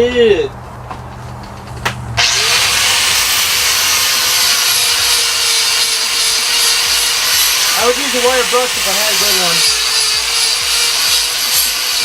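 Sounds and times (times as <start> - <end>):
angle grinder whine: 2.2 - 12.0
grinder disc grinding steel: 2.2 - 12.0.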